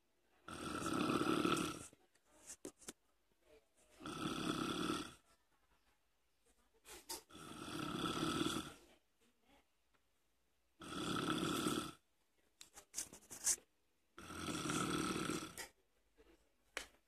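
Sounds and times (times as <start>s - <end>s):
person snoring: 0.5s - 1.9s, 4.0s - 5.2s, 7.3s - 8.8s, 10.8s - 12.0s, 14.2s - 15.6s.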